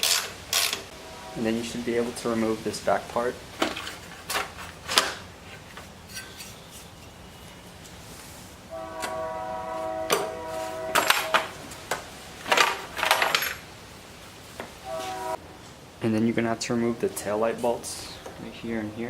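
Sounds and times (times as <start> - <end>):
distant horn chord: 0.9 - 3.5, 8.6 - 11.6, 14.8 - 15.5.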